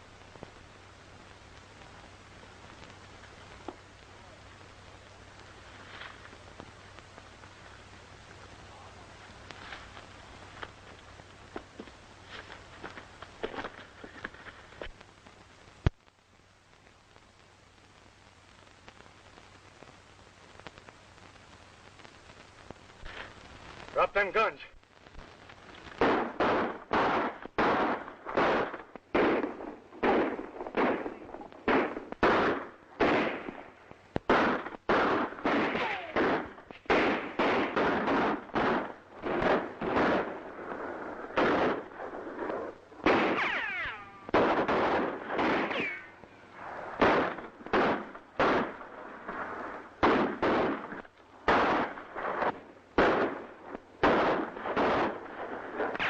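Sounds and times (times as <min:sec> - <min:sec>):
echoing pistol and rifle shots: 0:26.0 - 0:33.6, 0:34.3 - 0:40.3, 0:41.4 - 0:41.9, 0:43.0 - 0:46.1, 0:47.0 - 0:48.8, 0:50.0 - 0:53.4, 0:54.0 - 0:55.2.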